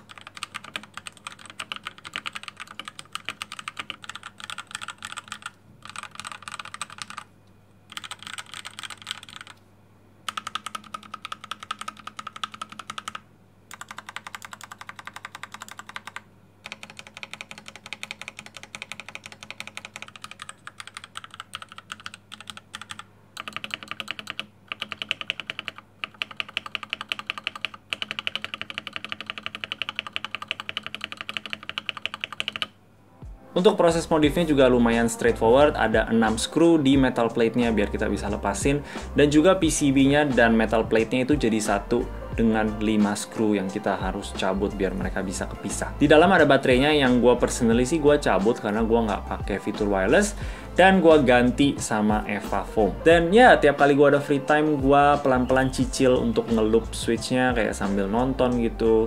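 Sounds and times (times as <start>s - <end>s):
mechanical keyboard typing: 0.0s - 7.3s, 7.9s - 9.6s, 10.3s - 32.7s.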